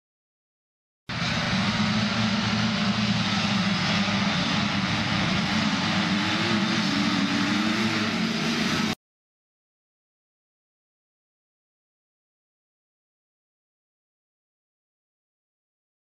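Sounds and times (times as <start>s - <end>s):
motocross bike engines: 1.1s - 9.0s.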